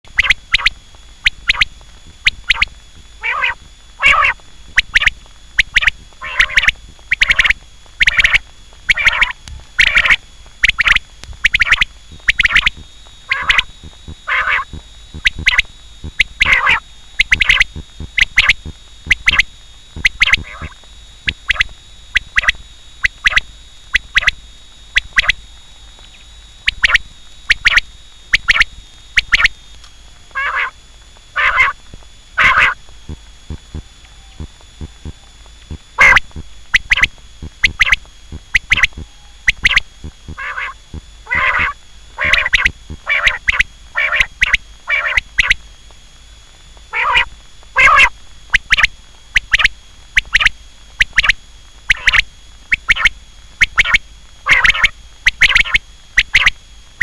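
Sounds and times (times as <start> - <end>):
quail calling: 2.3 - 15.6, 16.2 - 19.4, 20.0 - 22.6, 30.3 - 30.8, 31.4 - 31.8, 32.4 - 32.8, 36.0 - 45.6, 46.9 - 48.9, 51.9 - 52.2, 52.8 - 56.5.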